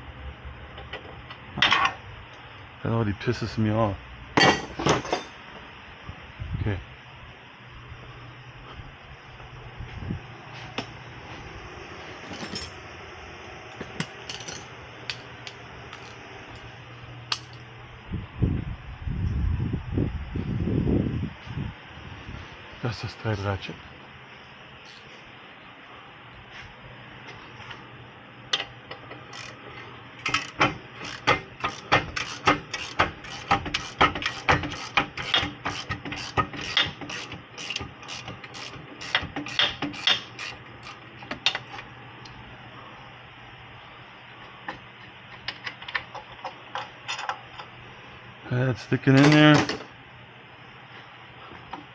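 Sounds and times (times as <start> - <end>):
steady low hum: 0.0 - 51.9
hand tools clicking and clinking: 14.0 - 16.7, 30.2 - 41.8
loud low rumbling noise: 14.8 - 22.8.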